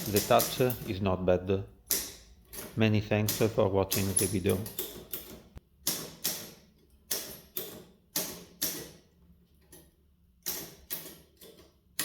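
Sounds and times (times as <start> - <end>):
typewriter keys clacking: 0.0 - 1.0, 1.9 - 8.8.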